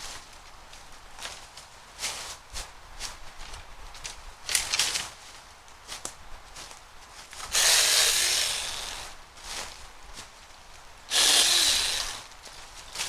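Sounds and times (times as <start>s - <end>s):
mini chainsaw running: 7.5s - 9.1s, 11.1s - 12.3s.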